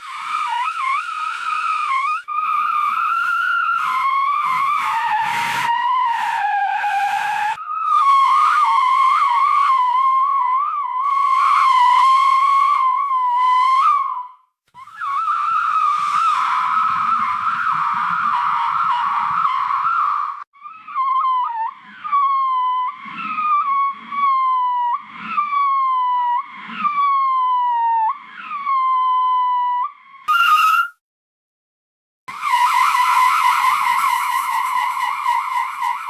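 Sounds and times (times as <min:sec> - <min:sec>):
car tyres squealing: 0:00.0 - 0:07.6, 0:14.8 - 0:20.4, 0:30.3 - 0:31.0, 0:32.3 - 0:36.0.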